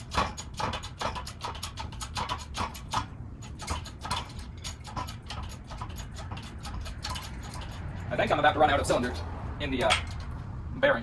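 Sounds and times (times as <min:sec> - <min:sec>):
hydraulic press clicking: 0:00.0 - 0:07.9.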